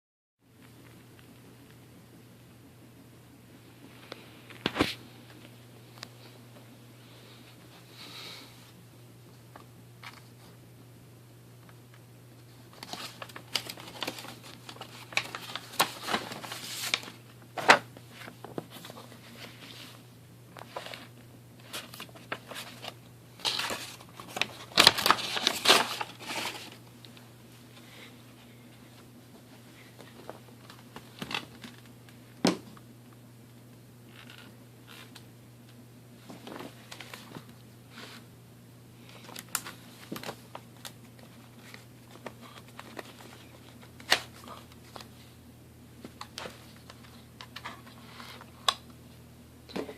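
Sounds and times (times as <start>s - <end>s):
faint low hum: 0.4s - 49.9s
rustling and crinkling: 12.4s - 32.0s, 36.2s - 38.3s, 39.0s - 45.4s.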